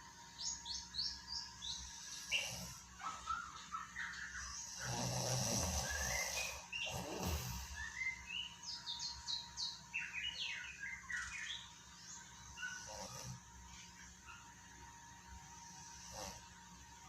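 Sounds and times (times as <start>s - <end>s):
small birds chirping: 0.0s - 17.0s
rooster snoring breath: 4.6s - 7.9s.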